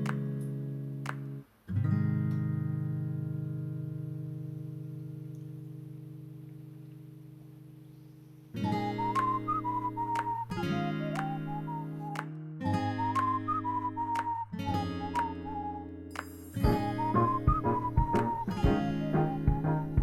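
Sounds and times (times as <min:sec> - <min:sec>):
acoustic guitar strumming: 0:08.6 - 0:20.0
whistled melody: 0:08.6 - 0:20.0.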